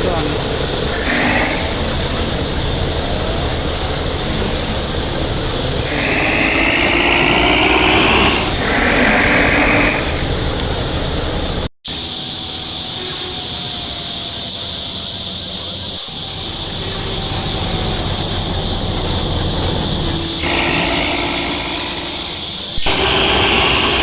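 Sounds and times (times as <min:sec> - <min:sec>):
diesel truck engine rumbling: 0:00.0 - 0:24.0
loud high-pitched sound: 0:03.8 - 0:10.2, 0:16.0 - 0:24.0.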